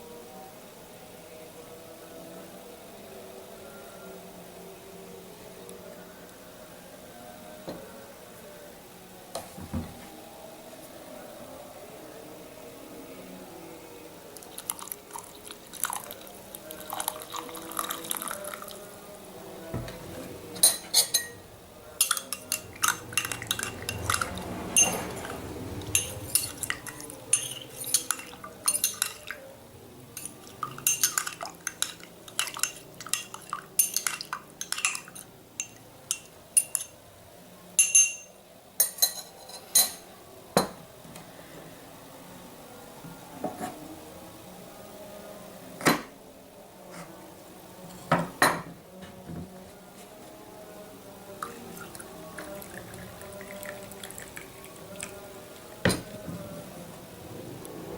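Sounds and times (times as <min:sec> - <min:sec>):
metal spoon clinking against glass: 0:20.6 - 0:21.4, 0:22.0 - 0:25.2, 0:25.8 - 0:29.4, 0:30.2 - 0:37.0, 0:37.8 - 0:40.0.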